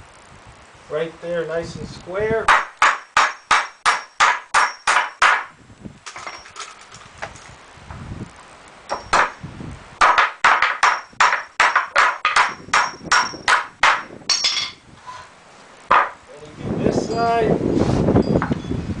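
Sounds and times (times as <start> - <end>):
hammer driving nails into wood: 2.5 - 5.5, 8.9 - 9.4, 10.0 - 14.6, 15.9 - 16.2.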